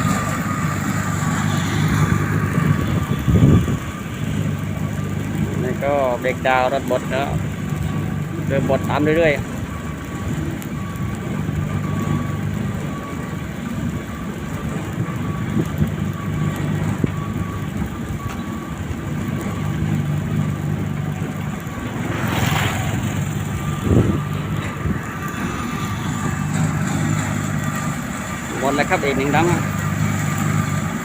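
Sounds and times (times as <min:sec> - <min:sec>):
road roller diesel engine running: 0:00.0 - 0:31.0.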